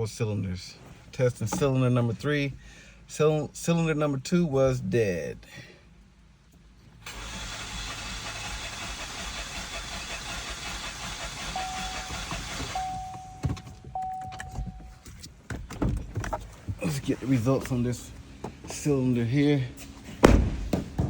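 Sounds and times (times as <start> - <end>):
engine cranking on starter: 7.0 - 14.5.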